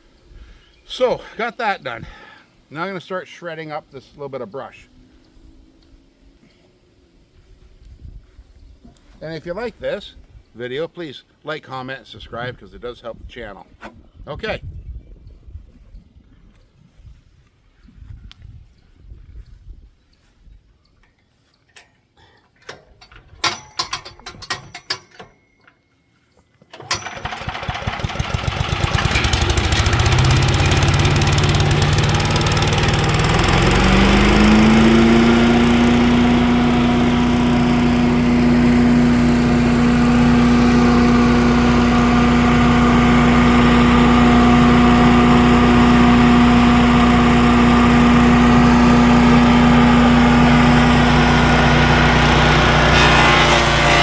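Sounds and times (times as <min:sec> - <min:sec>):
clicks and knocks: 0:22.6 - 0:25.8
small gasoline engine running: 0:26.8 - 0:54.0.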